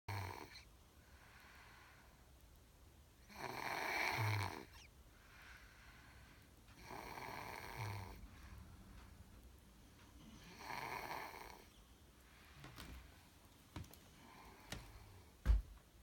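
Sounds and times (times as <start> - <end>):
loud snoring: 0.1 - 0.6, 3.3 - 4.8, 6.8 - 8.2, 10.4 - 11.7.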